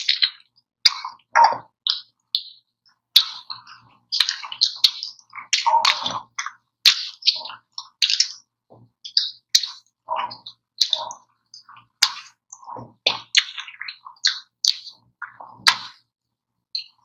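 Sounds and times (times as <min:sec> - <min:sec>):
mouth smacking while eating: 0:09.1 - 0:16.0.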